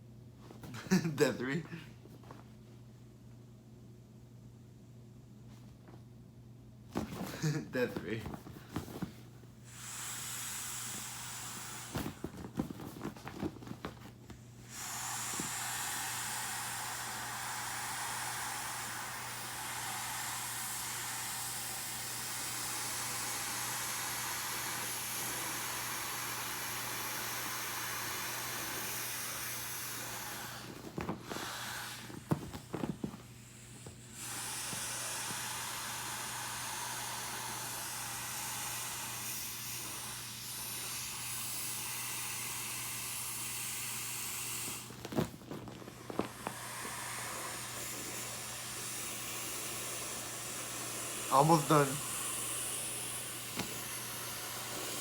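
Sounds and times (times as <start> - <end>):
air hissing from valve: 9.6 - 12.2, 14.6 - 45.3, 45.9 - 55.0
handling clicks and rustles: 44.9 - 46.3.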